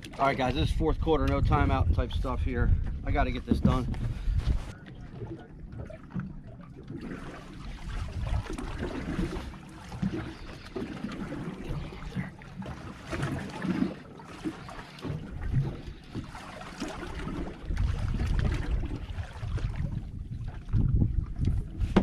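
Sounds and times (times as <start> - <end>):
wind buffeting microphone: 0.0 - 6.5, 7.8 - 10.5, 17.0 - 22.0
water sloshing against hull: 0.0 - 22.0.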